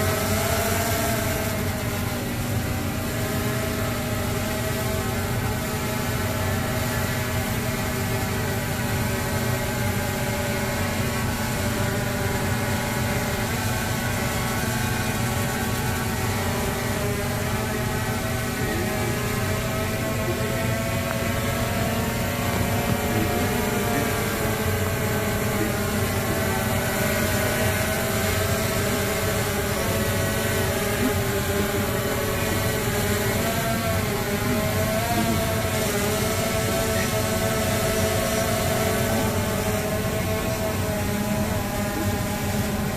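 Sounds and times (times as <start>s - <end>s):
drone rotors buzzing: 0.0s - 42.9s.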